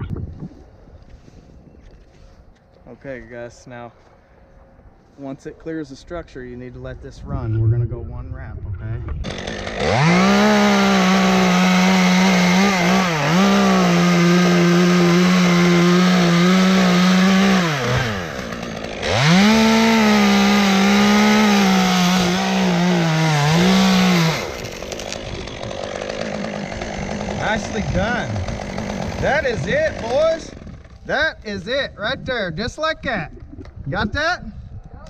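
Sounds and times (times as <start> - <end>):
chainsaw cutting at full throttle: 9.2 - 31.1.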